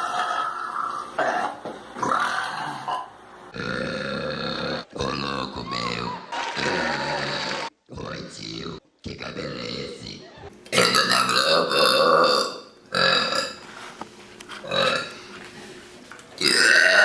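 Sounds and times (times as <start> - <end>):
person burping loudly: 0.0 - 7.7, 10.7 - 13.6, 14.6 - 15.2, 16.4 - 17.0.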